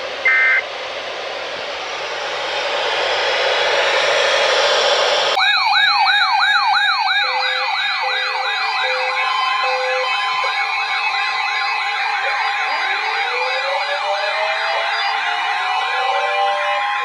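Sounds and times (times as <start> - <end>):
radio static hiss: 0.0 - 0.6
steady tones: 0.0 - 0.6
electronic siren yelping: 0.2 - 0.6, 5.4 - 17.0
pulsing beep: 0.2 - 0.6.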